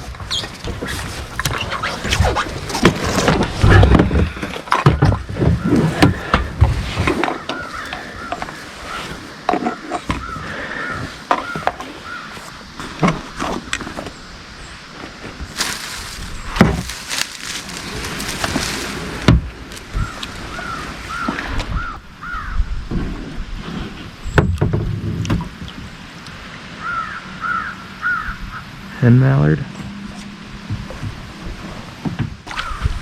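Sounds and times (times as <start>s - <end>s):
rustling noise: 0.0s - 22.0s
crows cawing: 7.2s - 12.7s, 19.9s - 22.7s, 26.8s - 28.8s, 32.5s - 32.9s.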